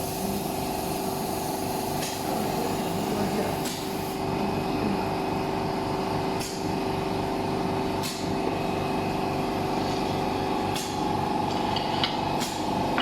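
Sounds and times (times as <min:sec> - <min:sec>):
welding machine humming: 0:06.1 - 0:13.0.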